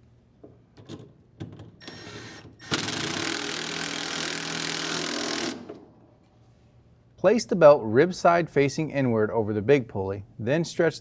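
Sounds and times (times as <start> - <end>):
impact driver running: 1.8 - 5.8.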